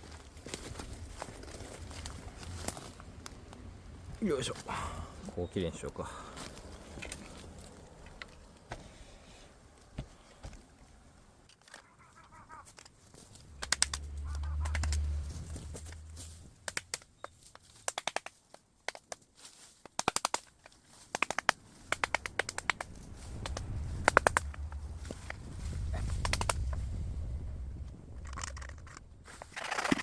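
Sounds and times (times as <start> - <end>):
bamboo clacking and cracking: 5.8 - 8.8, 9.7 - 30.0
low rumble: 13.2 - 16.7, 22.2 - 29.6.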